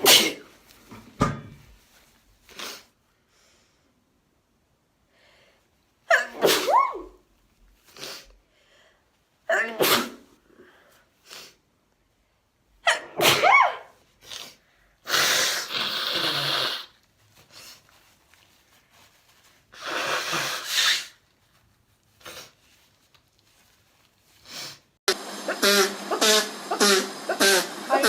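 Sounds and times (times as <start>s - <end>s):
person sneezing: 0.0s - 0.5s, 6.1s - 7.2s, 9.5s - 10.3s, 12.8s - 16.9s, 19.8s - 21.2s, 25.5s - 27.8s
person blowing nose: 2.4s - 3.0s, 6.4s - 6.8s, 7.8s - 8.3s, 11.2s - 11.6s, 14.2s - 18.2s, 19.0s - 21.3s, 22.1s - 22.9s, 24.3s - 28.0s.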